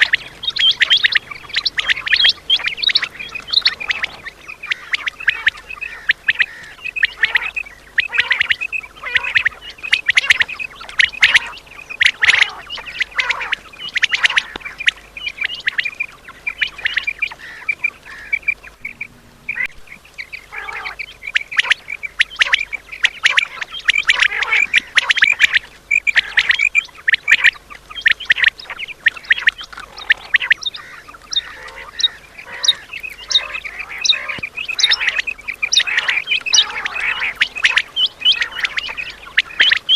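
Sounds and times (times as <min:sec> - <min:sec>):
quail calling: 0:00.0 - 0:39.9.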